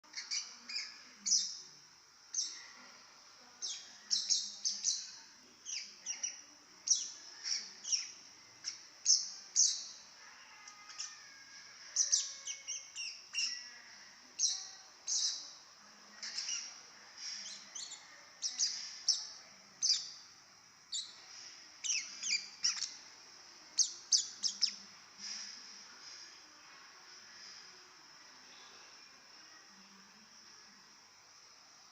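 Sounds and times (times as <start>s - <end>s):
baby lovebird chirping: 0.1s - 1.6s, 2.3s - 2.6s, 3.6s - 15.6s, 16.2s - 23.1s, 23.8s - 25.6s.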